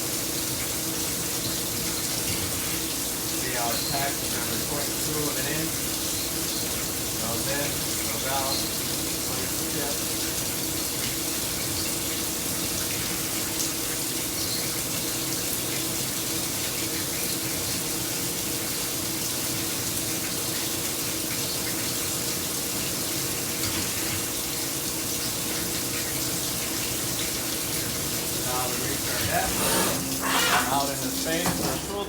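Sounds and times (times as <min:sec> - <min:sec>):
coolant rushing like running water: 0:00.0 - 0:32.0
machine hum: 0:27.9 - 0:32.0.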